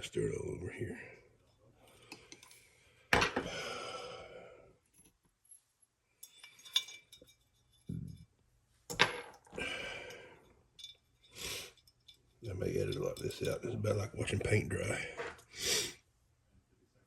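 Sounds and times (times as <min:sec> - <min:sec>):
metal tools clinking on workbench: 0:06.2 - 0:08.2, 0:10.8 - 0:13.7.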